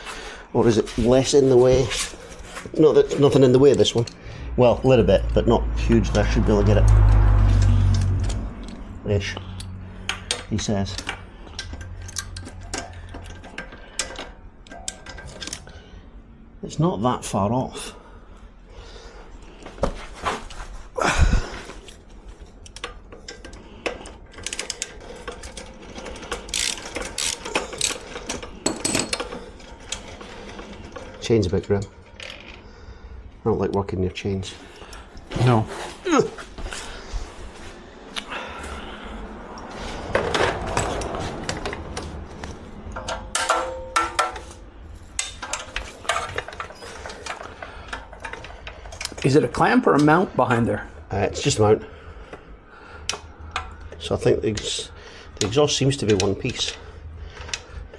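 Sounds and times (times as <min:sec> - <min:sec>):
hand tools clicking on metal: 0:09.5 - 0:15.7, 0:22.6 - 0:31.9, 0:45.1 - 0:49.4, 0:55.4 - 0:56.8.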